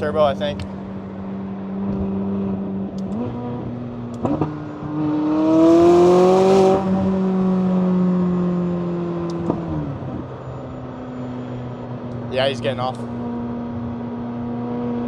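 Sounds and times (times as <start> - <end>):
sports car engine accelerating: 0.0 - 15.0.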